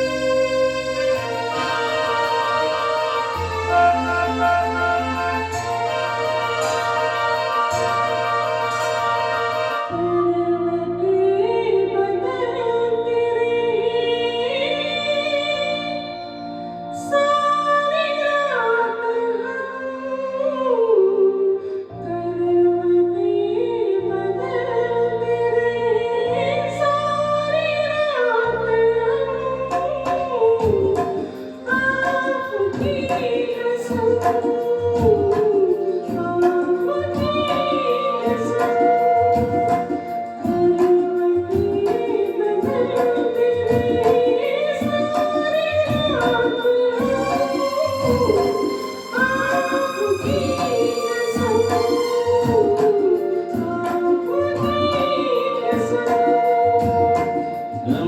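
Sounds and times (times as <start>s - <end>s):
steady rhythmic beat: 0.0s - 10.0s, 30.7s - 58.0s
sustained accompaniment: 0.0s - 17.7s, 30.2s - 58.0s
high singing voice: 29.3s - 58.0s.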